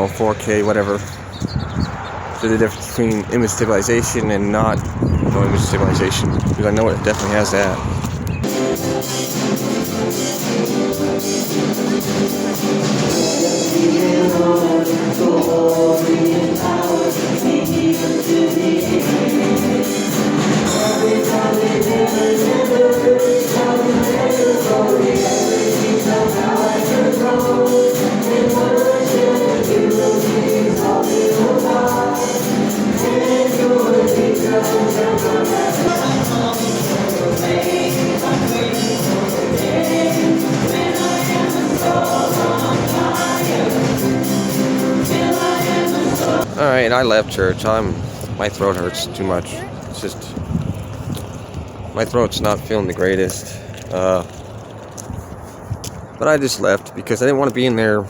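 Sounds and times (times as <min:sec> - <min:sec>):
instrumental backing: 0:08.2 - 0:46.5
group singing worship music: 0:08.5 - 0:46.6.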